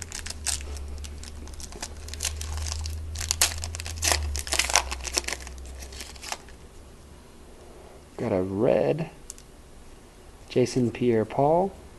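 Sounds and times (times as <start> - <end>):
foil wrapper crinkling and tearing: 0.0 - 6.6
steady low hum: 0.0 - 11.9.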